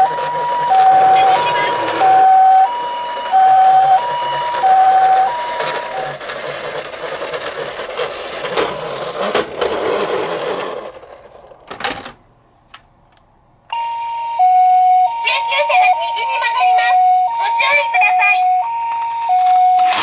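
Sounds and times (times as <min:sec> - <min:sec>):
toy two-tone siren: 0:00.0 - 0:06.3, 0:13.7 - 0:20.0
toy rolling rattling whir: 0:00.0 - 0:12.1, 0:19.7 - 0:20.0.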